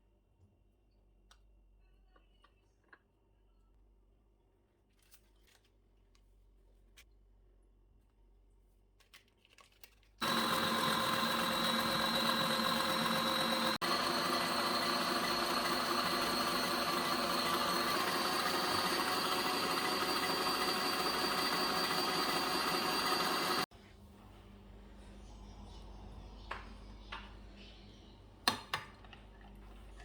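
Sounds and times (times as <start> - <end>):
blender motor whining: 10.2 - 23.7.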